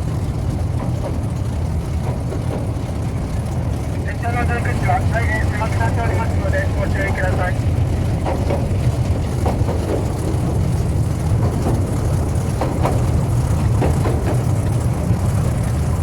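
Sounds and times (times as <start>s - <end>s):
train engine and wheels rumbling: 0.0s - 16.0s.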